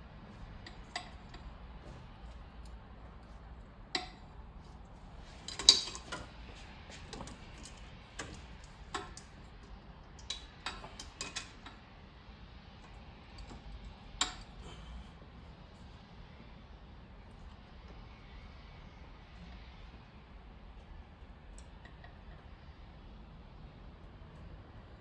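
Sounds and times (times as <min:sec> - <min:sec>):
metallic clicks of hand tools: 0:10.2 - 0:11.8.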